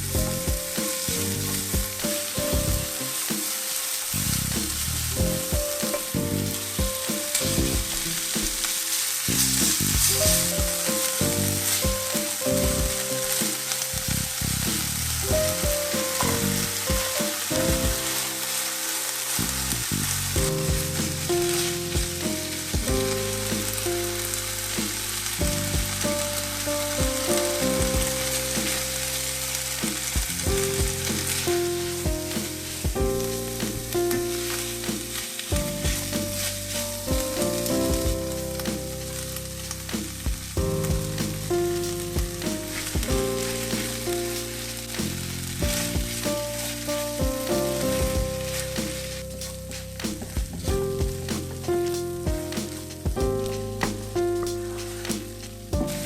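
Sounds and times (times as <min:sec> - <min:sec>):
food sizzling in a frying pan: 0:00.0 - 0:56.0
utensil tapping and scraping: 0:15.7 - 0:17.7.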